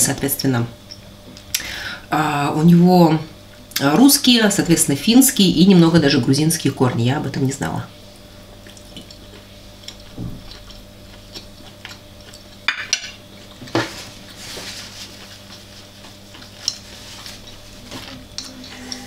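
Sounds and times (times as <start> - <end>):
utensils clinking against a bowl: 12.7 - 13.2.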